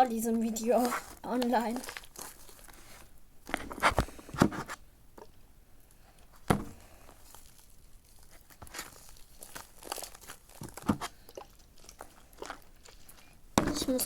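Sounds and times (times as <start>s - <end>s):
slime popping and crackling: 0.5s - 2.8s, 6.4s - 14.0s.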